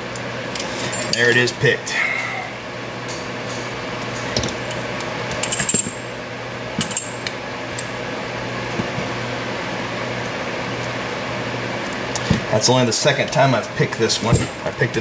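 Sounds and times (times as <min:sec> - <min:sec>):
steady low hum: 0:00.0 - 0:15.0
metal clinks of lock-picking tools: 0:05.4 - 0:06.0.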